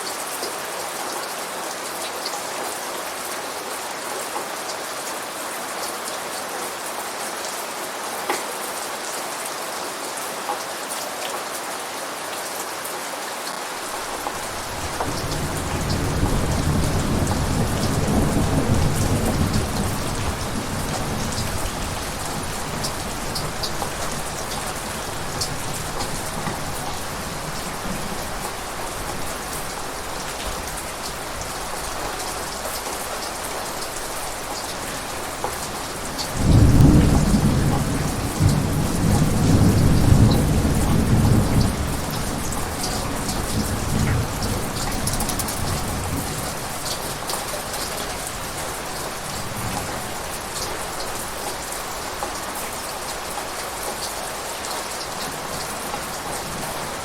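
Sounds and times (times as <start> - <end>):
steady rain: 0.0 - 57.0
thunder rumbling: 13.9 - 32.6, 33.8 - 51.4.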